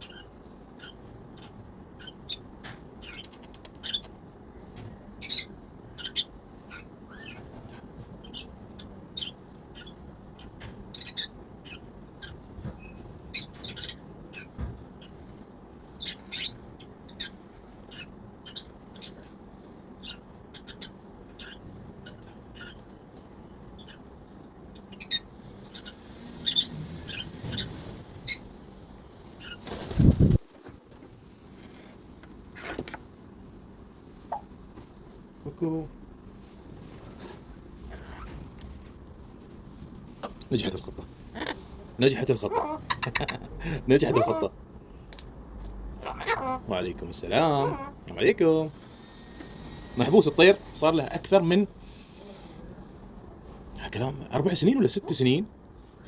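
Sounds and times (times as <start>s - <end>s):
parrot clicking and squeaking: 3.0s - 4.2s.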